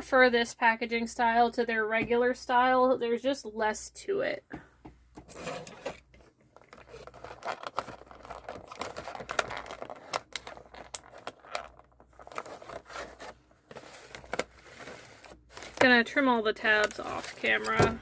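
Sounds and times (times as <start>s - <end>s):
packaging crinkling and tearing: 6.6s - 15.9s.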